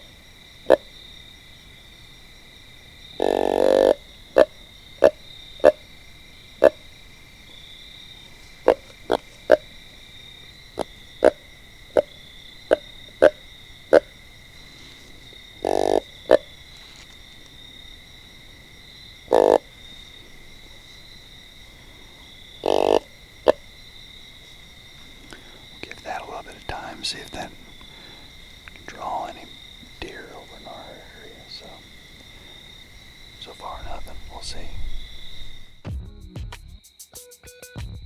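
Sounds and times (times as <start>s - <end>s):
insects trilling: 0.0s - 35.9s
deer grunt call: 3.2s - 5.8s, 15.5s - 16.5s, 21.8s - 23.6s.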